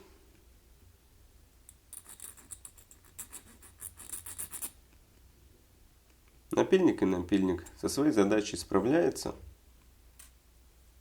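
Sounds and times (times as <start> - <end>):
small file rasping: 2.0 - 4.8.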